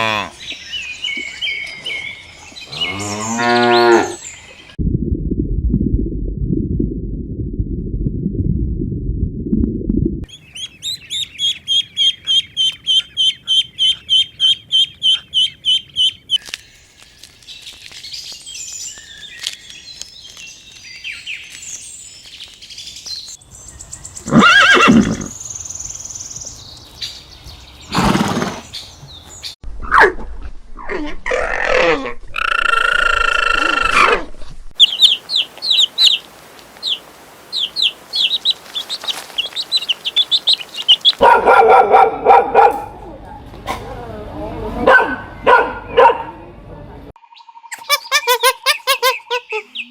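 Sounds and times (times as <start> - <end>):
low rumbling noise: 4.8 - 10.3
horse whinnies: 24.3 - 25.3.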